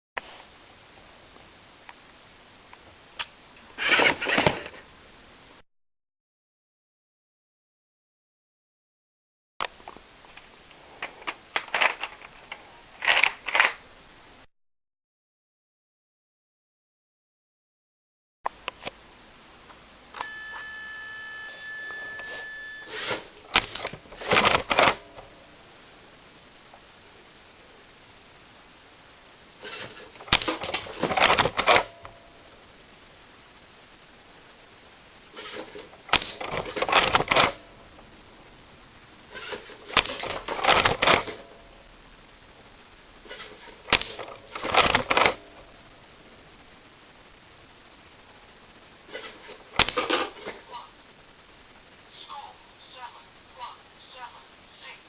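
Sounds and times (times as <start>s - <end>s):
electronic steady beep: 20.2s - 23.1s
faint high-pitched tone: 20.2s - 23.4s
plastic clatter: 39.4s - 41.4s, 49.1s - 50.7s.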